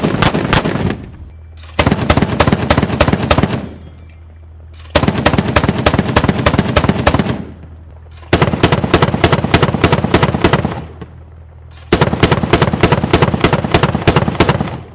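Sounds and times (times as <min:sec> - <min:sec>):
machine-gun fire: 0:00.0 - 0:01.0, 0:01.8 - 0:03.7, 0:04.9 - 0:07.6, 0:08.2 - 0:11.1, 0:11.8 - 0:14.9
low steady hum: 0:00.0 - 0:14.9.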